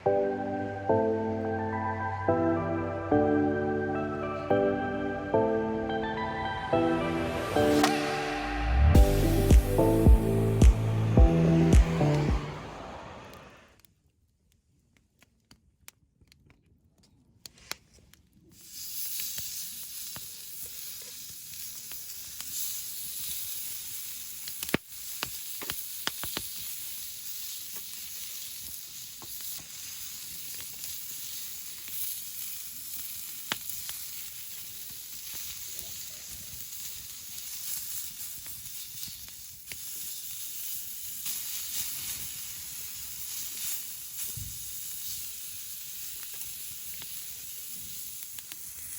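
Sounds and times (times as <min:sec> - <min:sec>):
meat sizzling: 0:07.4 - 0:12.6, 0:18.5 - 0:48.9.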